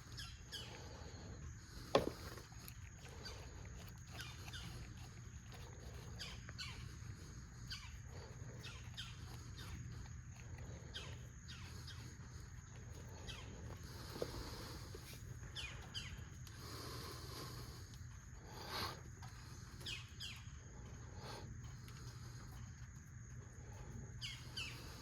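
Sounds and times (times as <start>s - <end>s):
faint low hum: 0.0s - 25.0s
bird chirping: 15.5s - 16.3s.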